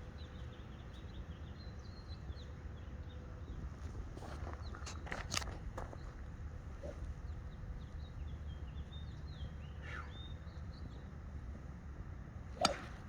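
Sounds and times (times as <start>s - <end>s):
faint birdsong chirps: 0.0s - 5.0s, 5.8s - 11.4s
golf club striking ball: 12.6s - 13.0s.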